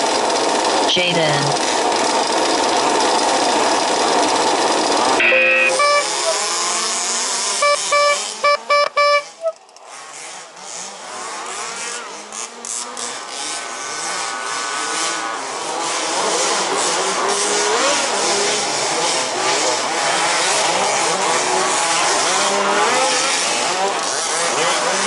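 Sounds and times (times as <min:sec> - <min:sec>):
rc buggy engines running: 0:00.0 - 0:25.0
long electronic tone: 0:05.2 - 0:06.4, 0:07.6 - 0:09.6
short start beeps: 0:05.2 - 0:06.4, 0:07.6 - 0:09.6.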